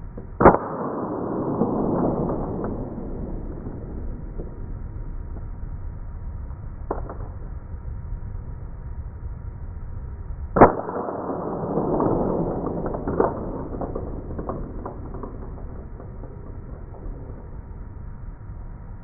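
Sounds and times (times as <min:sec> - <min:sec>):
airsoft pistol shot: 0:00.3 - 0:04.6, 0:10.6 - 0:17.6.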